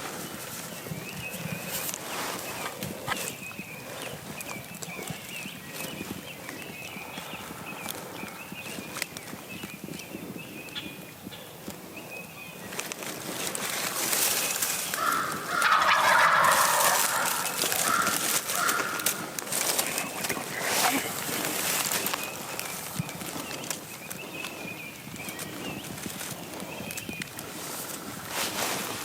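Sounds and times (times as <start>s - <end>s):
small birds chirping: 0.0s - 29.0s
turkey gobbling: 14.6s - 21.4s.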